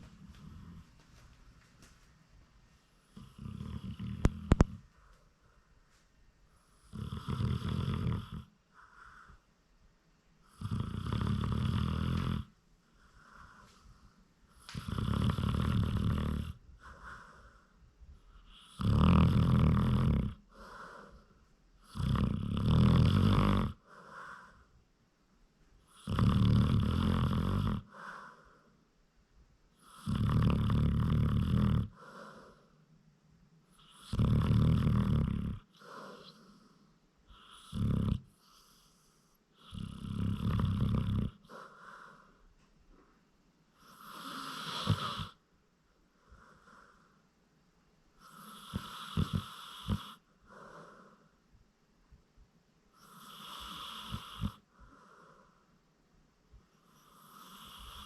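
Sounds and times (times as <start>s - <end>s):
dog snoring: 0.0s - 1.0s, 3.0s - 4.8s, 6.6s - 9.3s, 10.4s - 12.6s, 14.5s - 17.6s, 18.2s - 24.6s, 25.8s - 28.5s, 29.7s - 32.7s, 33.7s - 42.3s, 43.8s - 45.4s, 48.2s - 51.2s, 52.9s - 55.5s, 56.8s - 58.0s
quiet dog breaths: 0.0s - 7.7s, 11.8s - 15.6s, 16.4s - 18.4s, 35.7s - 40.4s, 41.3s - 43.2s, 48.2s - 51.5s.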